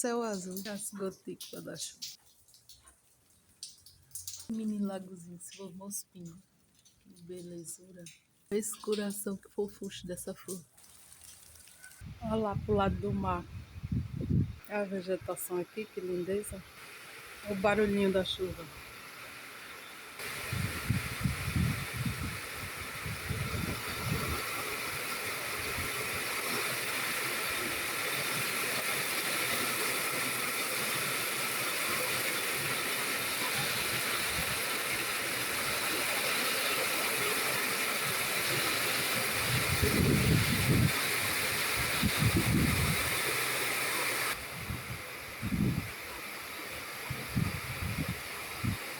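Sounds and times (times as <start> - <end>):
rain hissing: 3.5 - 48.9.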